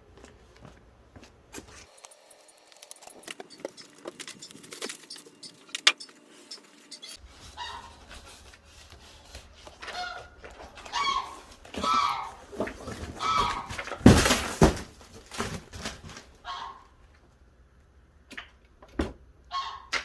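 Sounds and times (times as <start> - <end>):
cardboard packaging rustling: 1.6 - 5.7, 7.2 - 16.4.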